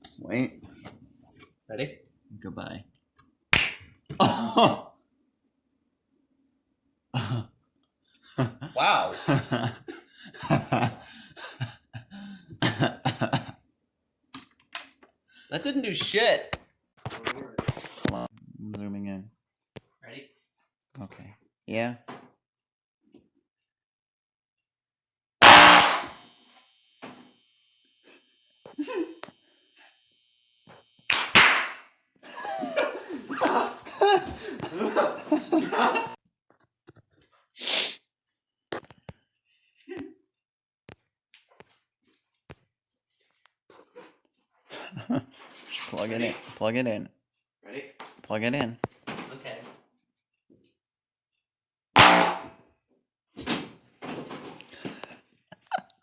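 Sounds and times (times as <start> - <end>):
man laughing: 4.1 - 4.9, 7.2 - 7.5, 8.3 - 13.6, 28.7 - 29.2, 32.2 - 36.2, 44.7 - 45.3, 54.8 - 56.0
man coughing: 4.2 - 4.9, 32.3 - 36.1
speaker blowing with sharp burst: 25.4 - 26.2, 31.1 - 31.8.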